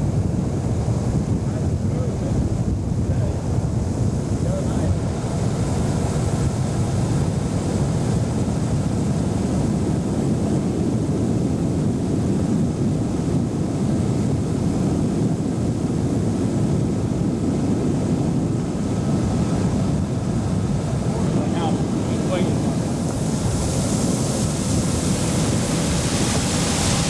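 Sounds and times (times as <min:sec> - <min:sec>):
wind on microphone: 0:00.0 - 0:27.0
outboard motor running: 0:16.2 - 0:27.0.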